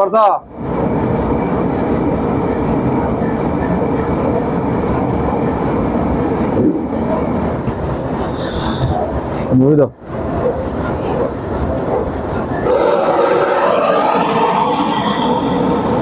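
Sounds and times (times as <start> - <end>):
gas torch flame rushing: 8.0 - 9.2.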